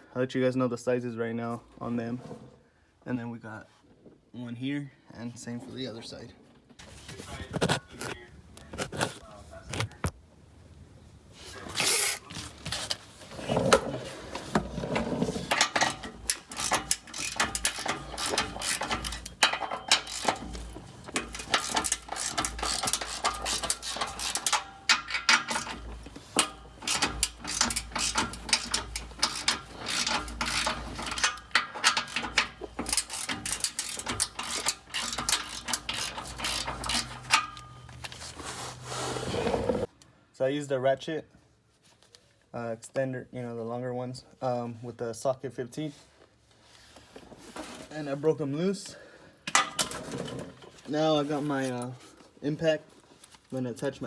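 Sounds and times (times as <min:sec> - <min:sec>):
socket ratchet clicking: 0:15.6 - 0:25.8, 0:26.4 - 0:37.7.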